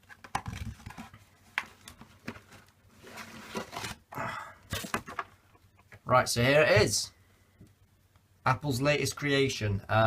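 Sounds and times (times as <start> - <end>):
cardboard scraping: 0.1 - 4.1
cardboard box rustling: 0.2 - 4.0.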